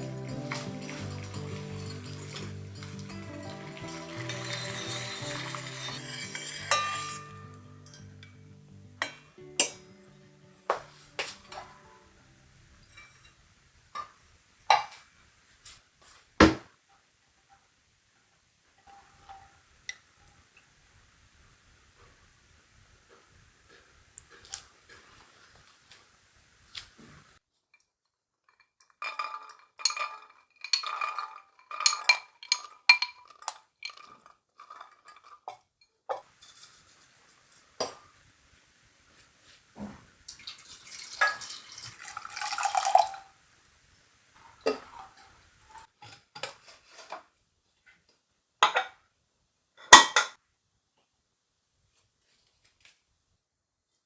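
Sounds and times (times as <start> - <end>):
dishes clinking: 0.0 - 10.1, 10.7 - 12.1, 28.9 - 35.5
water running: 0.0 - 13.2, 40.3 - 43.3.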